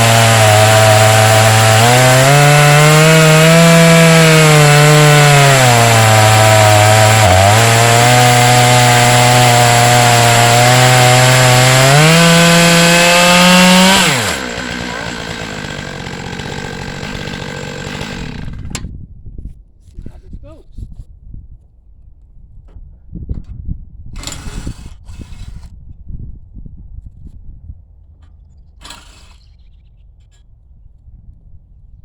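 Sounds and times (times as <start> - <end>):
chainsaw cutting log: 0.0 - 18.9, 24.2 - 25.6, 28.8 - 29.5.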